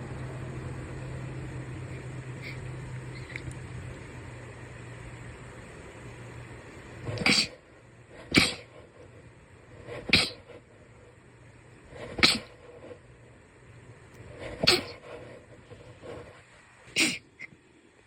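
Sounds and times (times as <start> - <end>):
short sharp sneezes: 7.2 - 7.6, 8.3 - 8.7, 10.1 - 10.5, 12.1 - 12.6, 14.6 - 15.0, 17.0 - 17.3.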